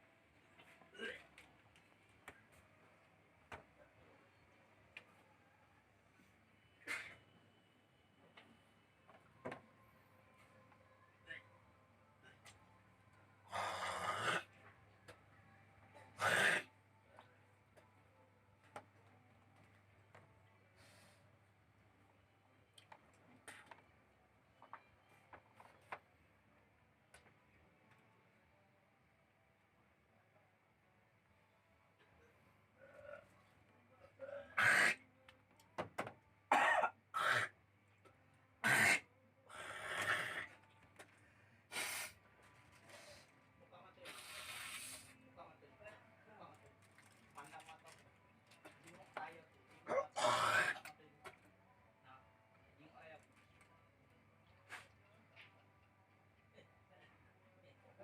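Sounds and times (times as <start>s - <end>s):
person coughing hard: 36.5s - 37.5s.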